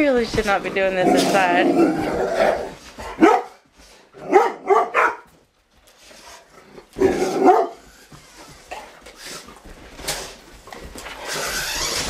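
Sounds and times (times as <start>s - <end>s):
dog barking: 3.1s - 3.6s, 4.2s - 5.3s, 7.1s - 7.8s.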